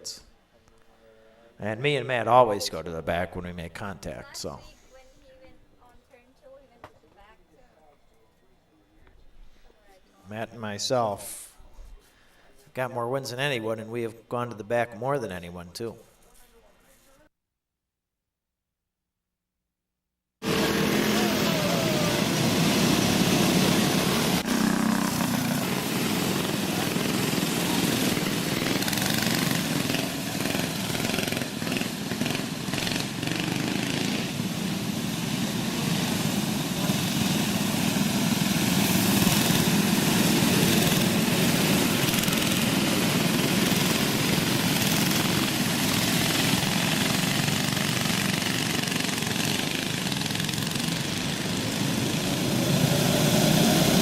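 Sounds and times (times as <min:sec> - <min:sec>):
go-kart engines droning: 0:20.4 - 0:54.0.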